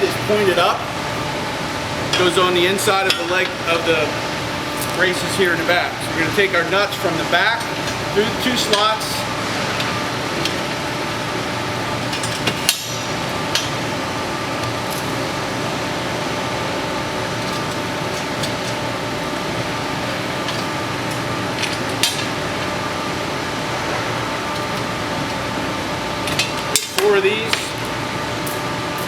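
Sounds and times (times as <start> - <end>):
steady background hum: 0.0 - 29.0.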